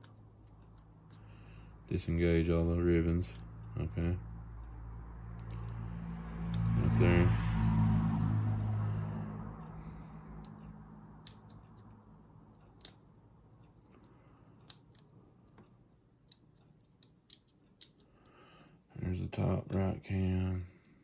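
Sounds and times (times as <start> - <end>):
tools clicking on phone internals: 0.0 - 1.4, 5.3 - 5.9, 10.4 - 18.4
low hum: 0.0 - 14.4.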